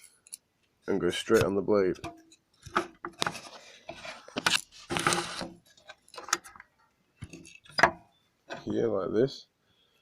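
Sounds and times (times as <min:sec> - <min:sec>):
wood scraping on saw table: 0:04.9 - 0:05.6.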